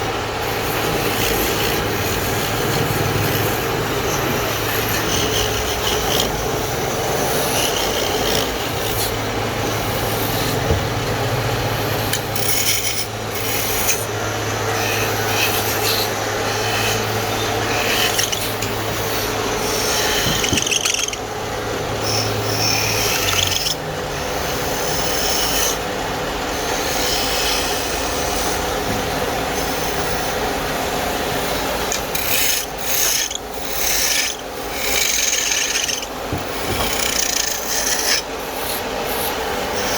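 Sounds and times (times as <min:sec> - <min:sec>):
hand tool rasping on wood: 0:00.0 - 0:09.2, 0:12.1 - 0:21.2, 0:22.0 - 0:25.9, 0:31.9 - 0:39.9
steady low hum: 0:00.0 - 0:39.9.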